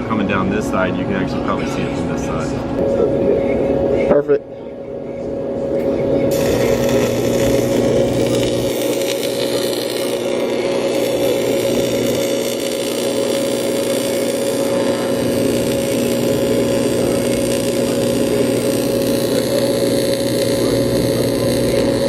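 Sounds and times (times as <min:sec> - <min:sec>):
electric welding arc buzzing: 0:05.4 - 0:22.0.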